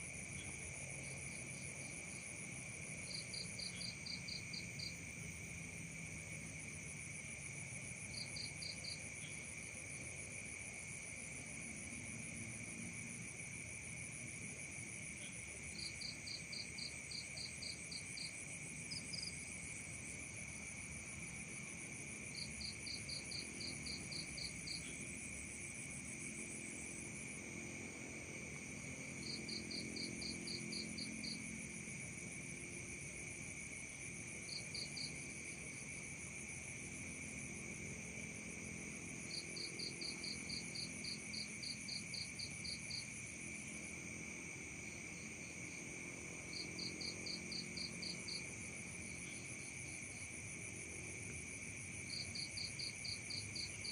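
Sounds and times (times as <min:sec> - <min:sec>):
crickets trilling: 0:00.1 - 0:53.9.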